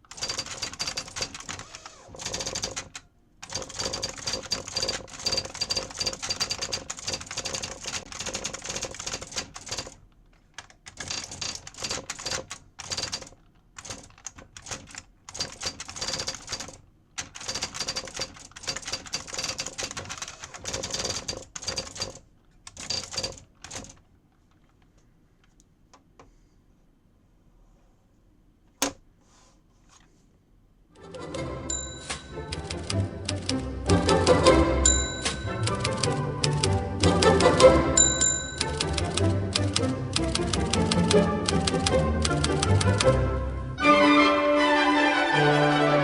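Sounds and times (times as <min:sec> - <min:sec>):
electronic typewriter clicking: 0:00.0 - 0:10.0, 0:10.6 - 0:24.0, 0:31.0 - 0:43.1.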